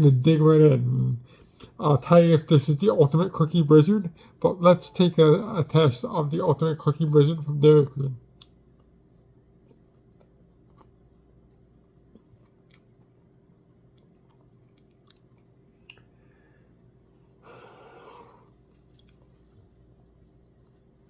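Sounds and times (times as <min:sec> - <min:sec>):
chewing and mouth clicks: 0:08.3 - 0:16.2, 0:18.7 - 0:19.3
breathy exhale: 0:17.4 - 0:18.6.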